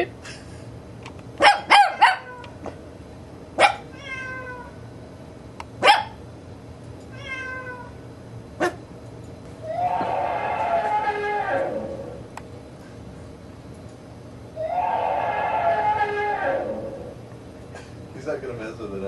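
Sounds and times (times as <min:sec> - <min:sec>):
recorded cat meows: 0:03.9 - 0:04.7, 0:07.1 - 0:07.9.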